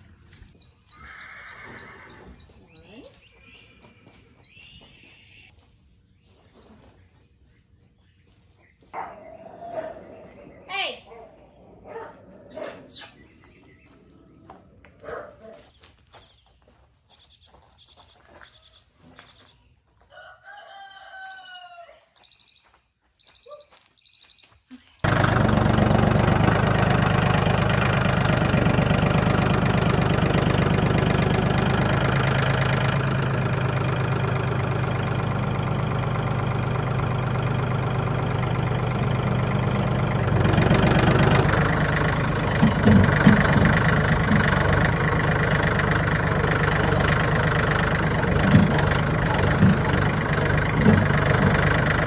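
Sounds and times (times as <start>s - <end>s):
engine running: 25.0s - 52.0s.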